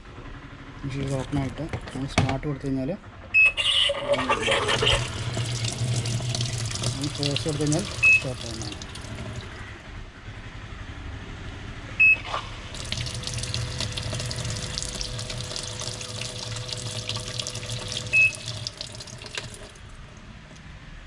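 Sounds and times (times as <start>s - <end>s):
water rushing into drum: 0.9s - 2.1s, 4.1s - 9.8s, 12.3s - 20.2s
washing machine beeping: 3.4s - 9.6s, 12.0s - 19.8s.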